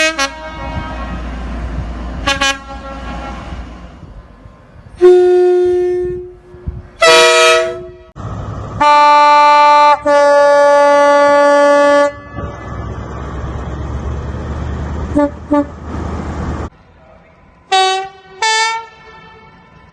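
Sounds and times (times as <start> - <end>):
train horn blasts: 0.0 - 1.3, 2.2 - 3.7, 5.0 - 8.2, 8.8 - 12.6, 15.1 - 15.7, 17.7 - 19.9
rumble of moving train: 0.0 - 19.9.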